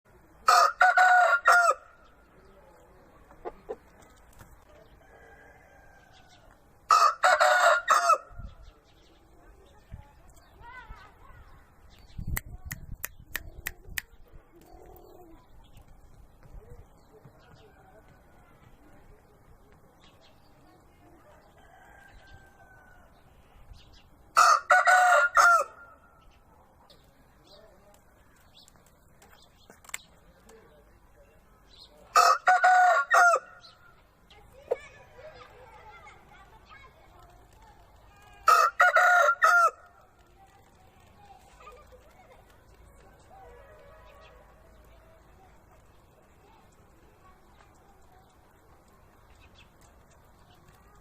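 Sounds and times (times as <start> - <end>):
rooster crowing: 5.0 - 8.3, 24.4 - 25.9, 32.1 - 33.5, 38.4 - 39.8.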